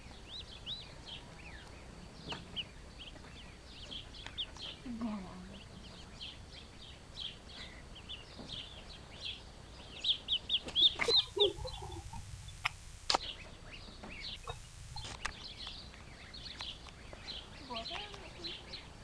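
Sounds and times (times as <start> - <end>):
ducklings peeping: 0.0 - 19.0
sharp clicks: 12.1 - 13.3.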